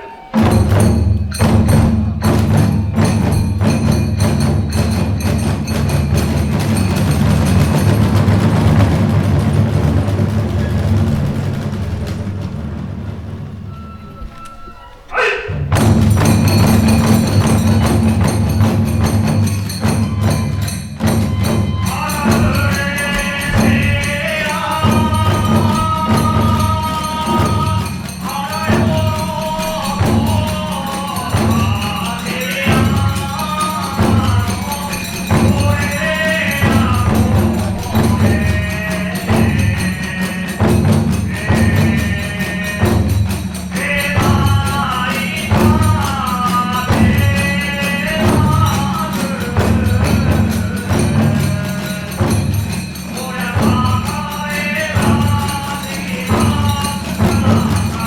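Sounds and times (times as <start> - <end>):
bamboo flute melody: 0.0 - 1.6, 12.9 - 16.0, 16.6 - 28.0
hand cymbals clashing: 0.0 - 12.0, 15.2 - 58.0
taiko drums beating: 0.0 - 58.0.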